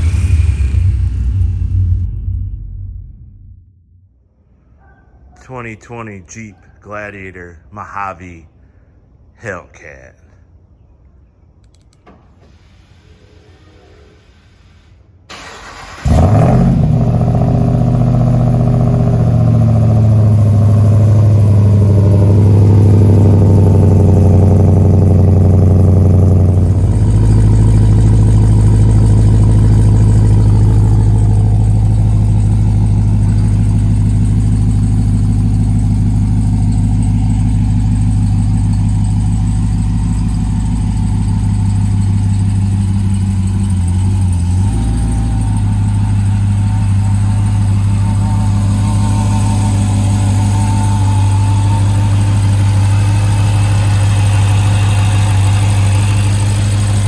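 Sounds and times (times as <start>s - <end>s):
engine idling: 0.0s - 3.8s, 15.3s - 57.0s.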